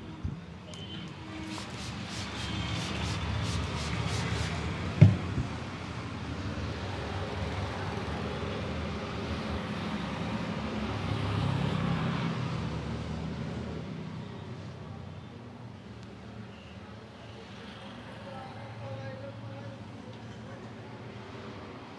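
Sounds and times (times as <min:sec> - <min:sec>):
road traffic rumbling: 0:01.1 - 0:05.0.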